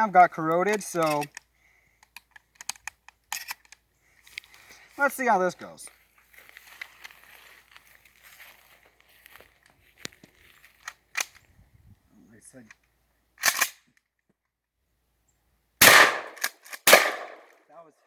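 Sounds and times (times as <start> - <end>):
shotgun reports: 15.8 - 17.5.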